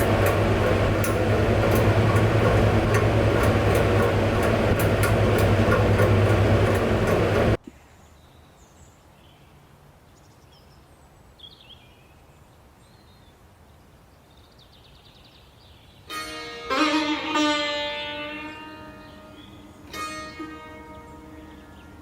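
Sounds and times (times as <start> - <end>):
loud rumbling with low hum: 0.0 - 7.6.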